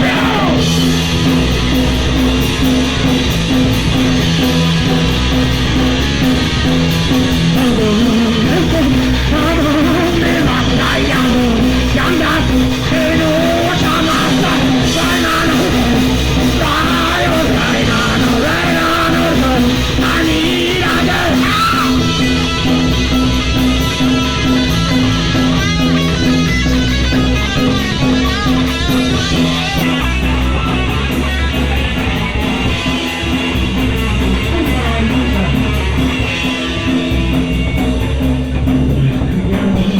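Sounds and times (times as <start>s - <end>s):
shouted singing: 0.0s - 0.9s, 7.6s - 22.8s
punk rock band playing: 0.0s - 39.9s.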